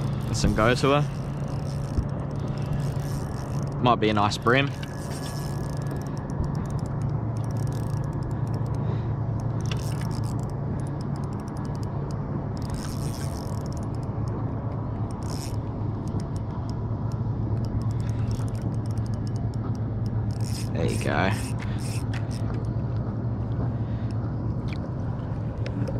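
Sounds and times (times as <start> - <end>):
fishing reel ticking: 0.0 - 8.8, 9.4 - 14.3, 15.0 - 22.7
steady low hum: 0.0 - 25.9.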